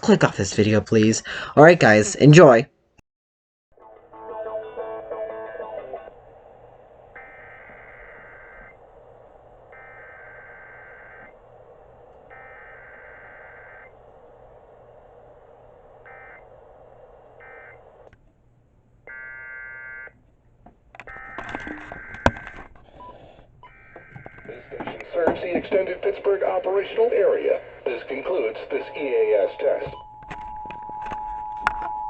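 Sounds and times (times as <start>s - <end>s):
low radio hum: 3.8s - 32.0s
warbling digital tone bursts: 7.2s - 8.8s, 9.7s - 11.4s, 12.3s - 14.0s
chord of stacked tones: 27.9s - 31.3s.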